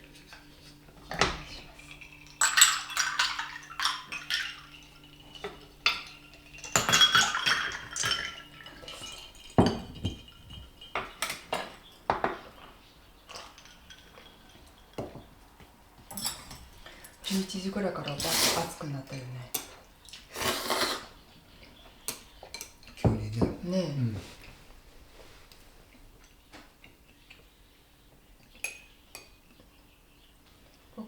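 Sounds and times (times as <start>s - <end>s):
chopsticks and spoons clinking bowls: 0.0s - 18.6s, 22.0s - 23.8s.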